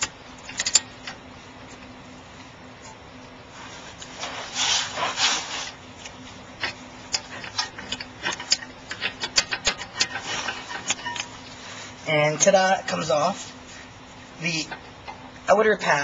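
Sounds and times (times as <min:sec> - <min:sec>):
metal scraping: 0:07.1 - 0:13.9.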